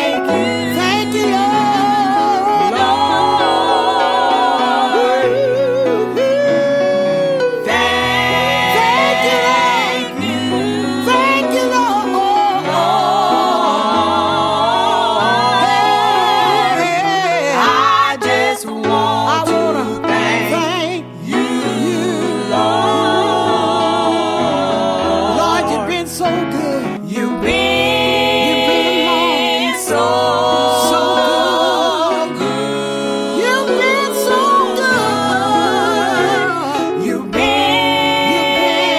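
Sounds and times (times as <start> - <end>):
gospel singing: 0.0 - 38.9.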